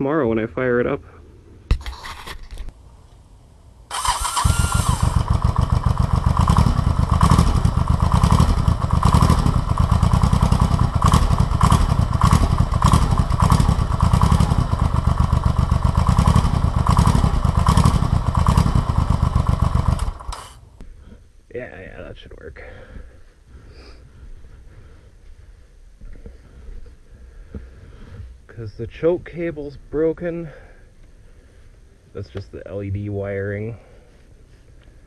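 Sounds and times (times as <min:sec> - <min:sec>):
electric starter cranking engine: 0:03.9 - 0:20.6
starter whine: 0:03.9 - 0:21.2.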